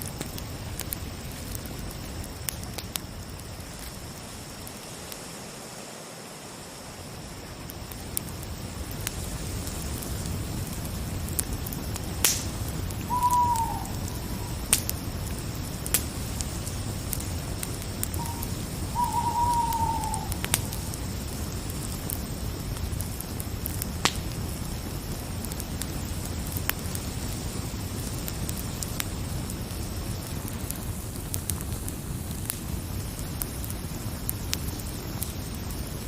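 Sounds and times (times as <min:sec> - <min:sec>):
cricket trill: 0:00.0 - 0:36.0
fire crackling and popping: 0:00.0 - 0:36.0.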